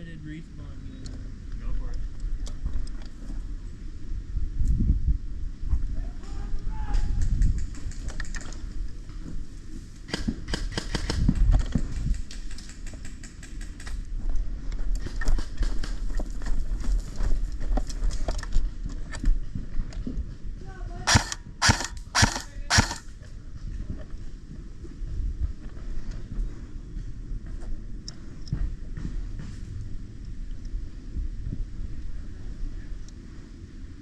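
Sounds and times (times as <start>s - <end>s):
airsoft gun shots: 21.1s - 23.0s.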